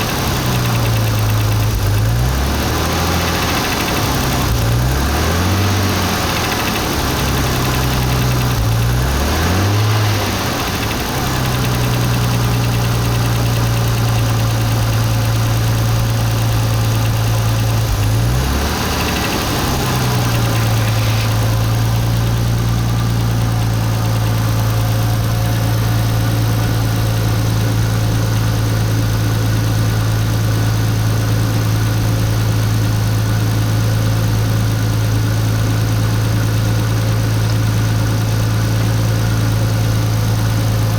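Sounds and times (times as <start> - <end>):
car engine idling: 0.0 - 40.9.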